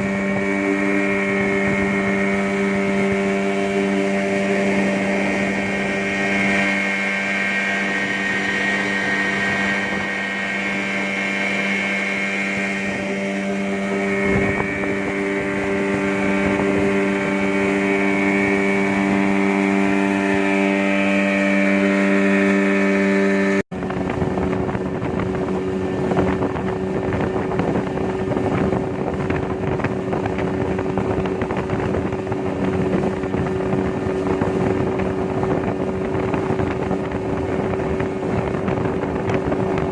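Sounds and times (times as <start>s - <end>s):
rushing water: 0.0s - 23.0s
outboard motor running: 0.0s - 39.9s
wind noise on microphone: 0.0s - 39.9s.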